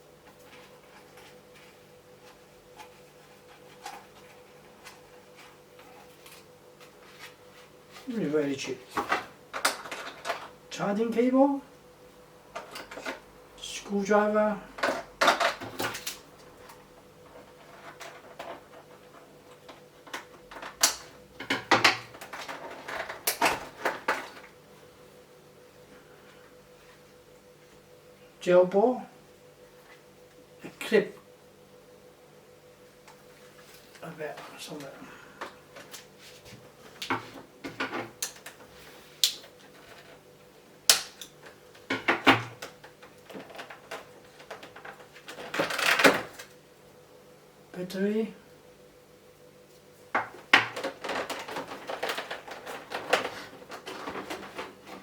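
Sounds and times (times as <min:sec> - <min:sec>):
plastic parts clicking and knocking: 0:08.9 - 0:10.5, 0:14.8 - 0:16.2, 0:19.7 - 0:24.5, 0:40.9 - 0:46.5, 0:50.2 - 0:55.0
packaging rustling: 0:50.7 - 0:55.0.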